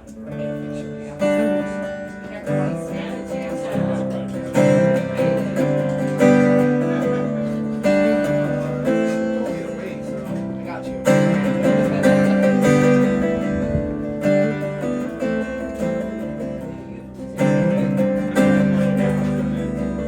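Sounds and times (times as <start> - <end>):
acoustic guitar strumming chords: 0.0 - 20.0.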